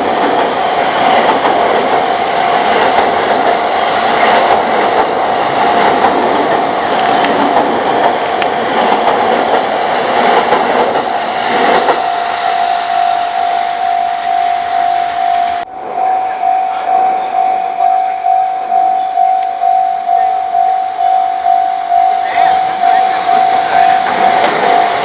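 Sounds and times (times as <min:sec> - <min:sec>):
train wheels clattering over rails: 0:00.0 - 0:12.1, 0:22.3 - 0:25.0
level crossing warning bell: 0:12.0 - 0:25.0.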